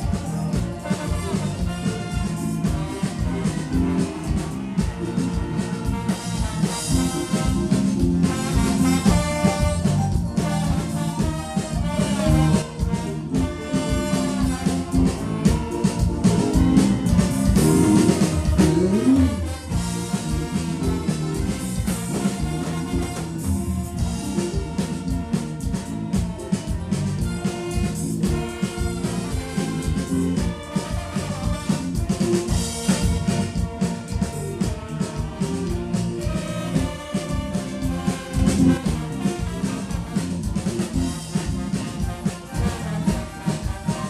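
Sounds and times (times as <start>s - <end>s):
dance band playing lively music: 0.0s - 44.0s
steady drum beat: 0.0s - 44.0s
sliding note: 16.2s - 20.2s.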